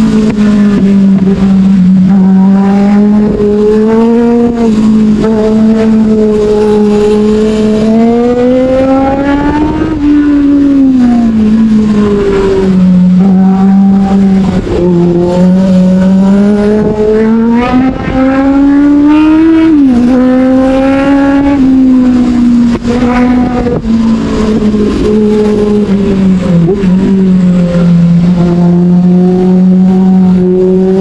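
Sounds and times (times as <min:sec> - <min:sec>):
motorcycle engine revving: 0:00.0 - 0:31.0.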